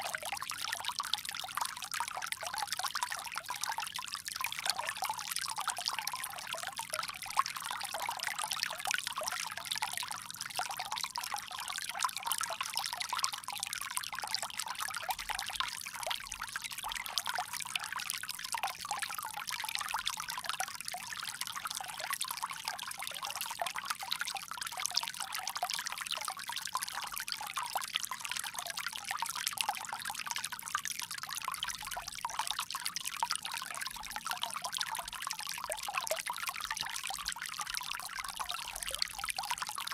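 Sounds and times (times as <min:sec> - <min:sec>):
water pouring from bamboo spout: 0:38.4 - 0:39.9.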